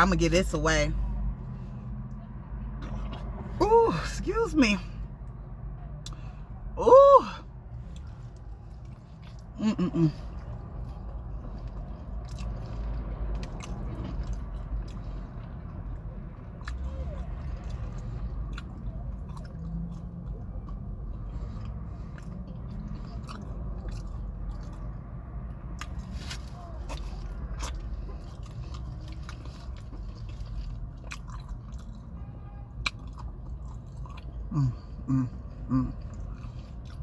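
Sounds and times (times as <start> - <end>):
chewing and biting: 7.8 - 37.0.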